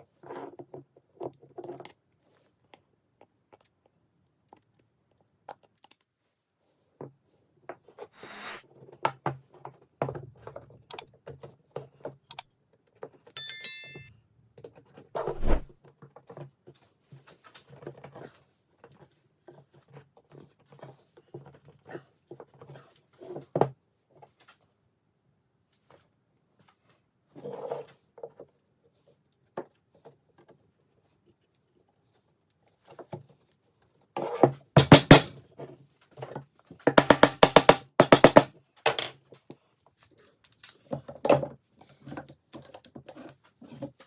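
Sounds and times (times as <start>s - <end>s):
loud knock: 34.8s - 35.3s, 37.0s - 39.1s
tools and wood handled: 34.8s - 35.3s.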